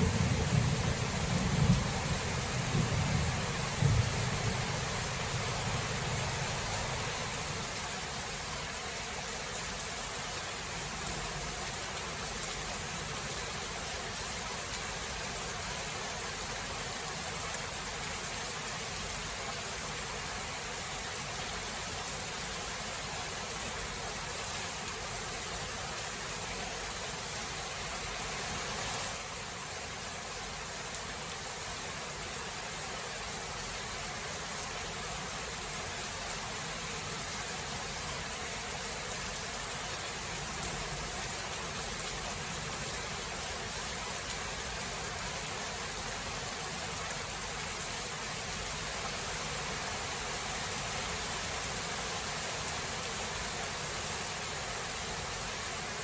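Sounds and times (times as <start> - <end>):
low thunder rumble: 0.0 - 6.5
rain hiss: 0.0 - 56.0.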